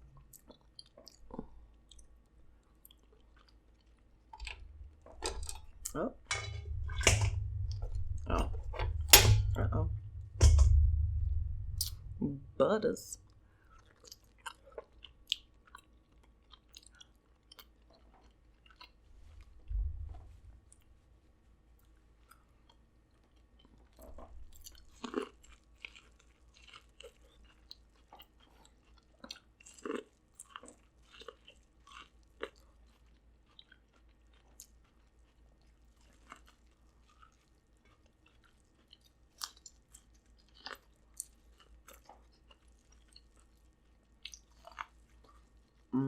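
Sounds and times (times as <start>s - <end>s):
chewing corn on the cob: 0.0s - 6.2s, 13.6s - 19.6s, 20.7s - 46.0s.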